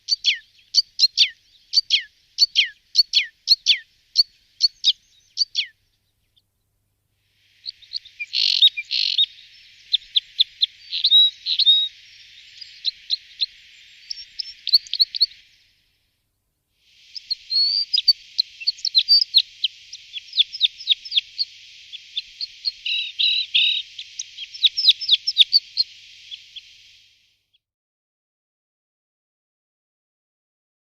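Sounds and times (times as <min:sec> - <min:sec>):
bird chirps and trills: 0:00.0 - 0:06.4, 0:07.6 - 0:15.7, 0:17.0 - 0:27.0.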